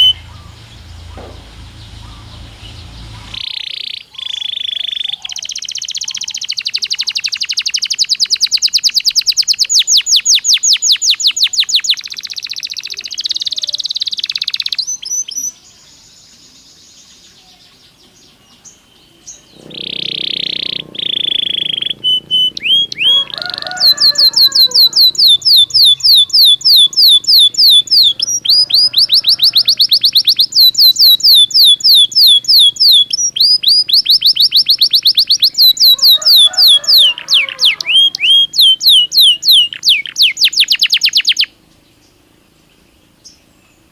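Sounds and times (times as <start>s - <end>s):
canary singing: 0.0s - 16.1s, 17.4s - 41.6s.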